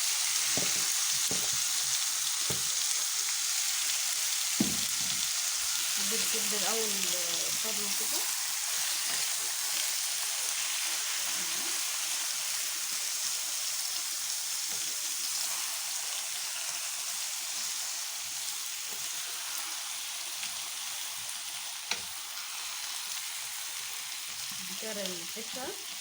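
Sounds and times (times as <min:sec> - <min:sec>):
food sizzling in hot oil: 0:00.0 - 0:26.0.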